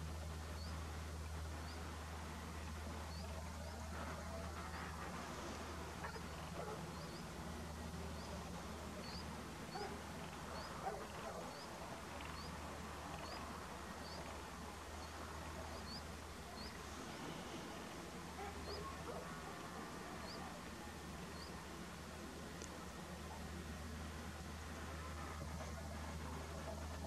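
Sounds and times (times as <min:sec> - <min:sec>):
low steady hum: 0:00.0 - 0:27.0.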